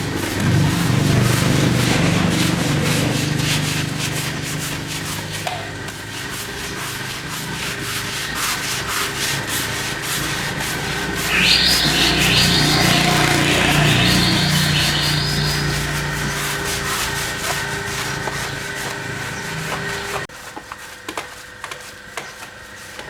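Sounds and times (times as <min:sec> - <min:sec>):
scrubbing strokes on a surface: 0:00.0 - 0:23.0
low machine hum: 0:09.5 - 0:18.1.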